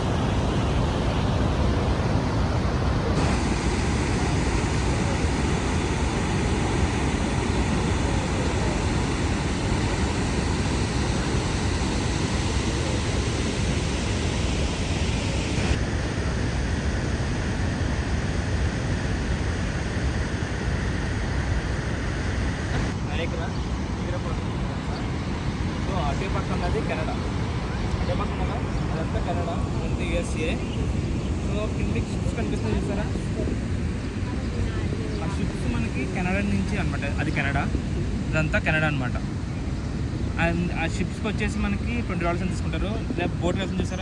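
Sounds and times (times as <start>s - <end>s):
waterfall roaring: 0.0s - 23.0s.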